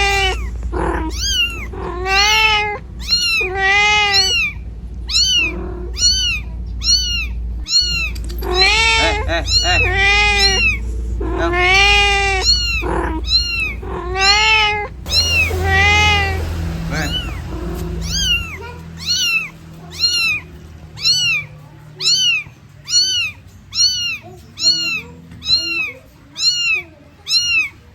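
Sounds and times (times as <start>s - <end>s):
low rumble: 0.0s - 21.8s
cat meowing: 0.0s - 27.9s.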